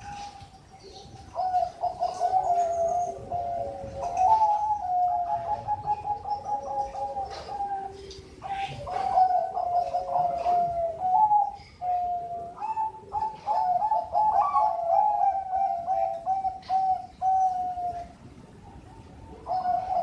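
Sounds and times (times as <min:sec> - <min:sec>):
dove cooing: 0:00.0 - 0:20.0.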